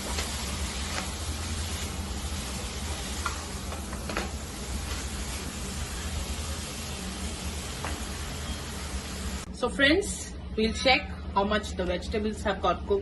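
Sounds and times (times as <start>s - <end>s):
vegetables sizzling in a pan: 0.0s - 9.5s.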